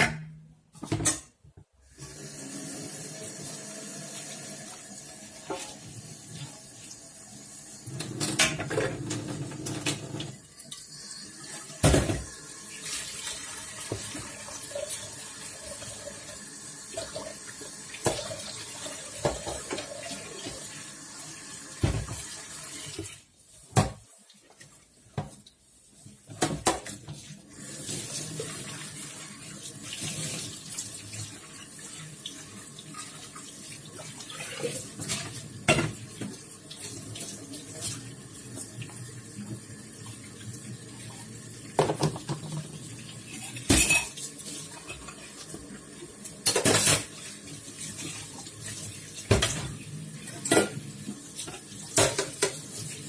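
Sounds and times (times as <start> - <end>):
tap water running: 1.6 - 53.0
dishes and cutlery clinking: 43.4 - 45.3, 50.4 - 50.8.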